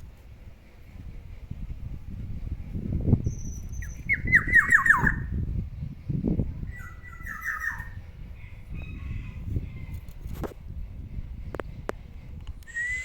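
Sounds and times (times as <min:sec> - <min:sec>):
low rumble: 0:00.0 - 0:13.0
bird whistled calls: 0:03.2 - 0:05.3, 0:06.7 - 0:08.0, 0:12.7 - 0:13.0.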